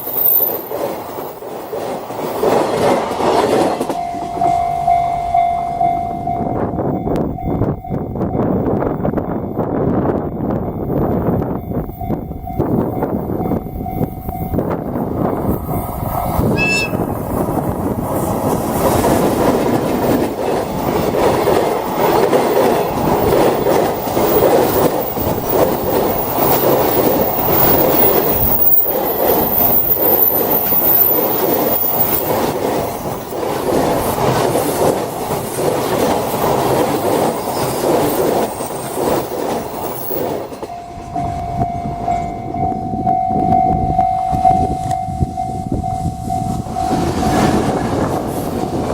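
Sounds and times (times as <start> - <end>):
steady high tone: 3.8 - 17.7, 39.8 - 47.7
train wheels clattering over joints: 14.7 - 42.5.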